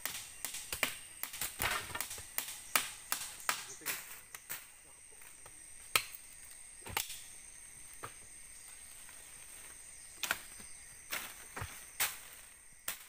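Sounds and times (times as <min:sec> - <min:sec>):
sharp knocks or cracks: 0:00.0 - 0:04.6
high insect drone: 0:00.0 - 0:13.0.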